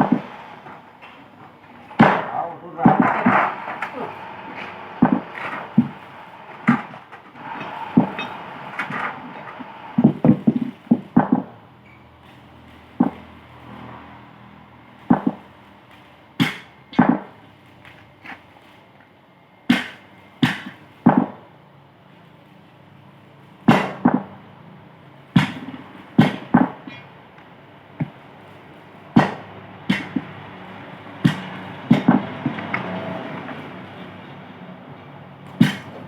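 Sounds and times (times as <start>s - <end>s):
metal tools clanking on steel: 7.5s - 9.1s, 26.4s - 27.1s.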